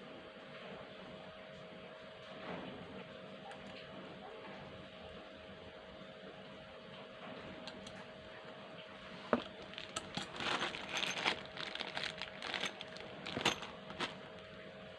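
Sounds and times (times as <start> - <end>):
packaging crinkling and rustling: 9.3 - 14.6.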